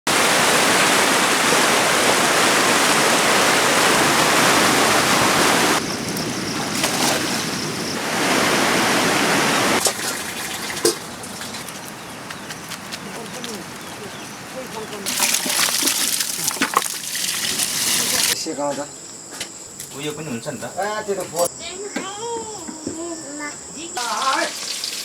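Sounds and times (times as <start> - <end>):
river water rushing: 0.1 - 12.0.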